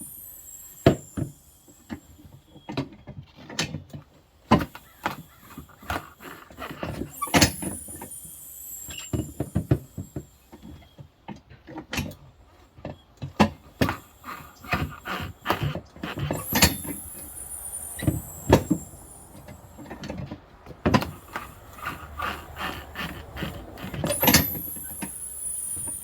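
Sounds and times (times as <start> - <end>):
high squeak: 0.0 - 2.8, 4.6 - 11.0, 13.8 - 20.2, 20.9 - 26.0.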